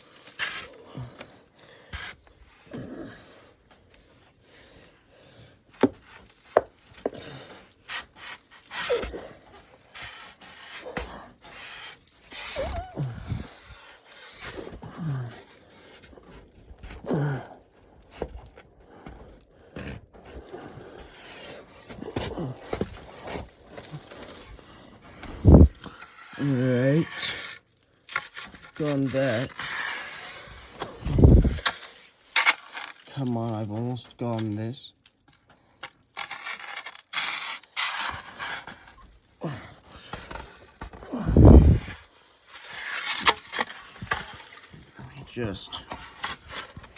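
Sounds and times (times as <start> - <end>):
grunts of effort: 2.7 - 3.4, 12.6 - 13.6, 14.7 - 15.5, 16.9 - 17.8, 39.4 - 40.3, 41.0 - 42.0
paddle scraping and knocking ice: 5.7 - 17.6, 18.2 - 33.9, 35.6 - 46.9
paddle scraping against ice: 36.2 - 39.1, 41.3 - 46.9.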